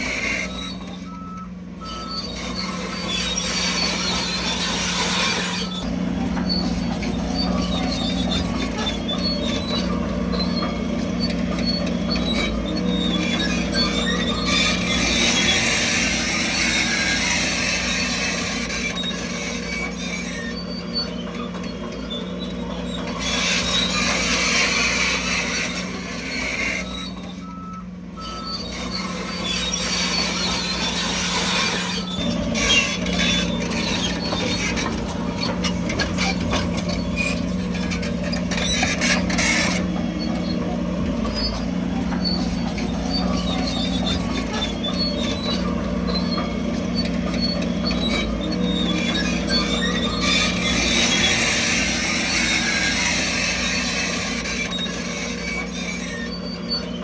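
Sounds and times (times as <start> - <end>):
diesel engine running: 0.0 - 57.0
high-pitched squealing: 1.8 - 27.6, 28.2 - 57.0.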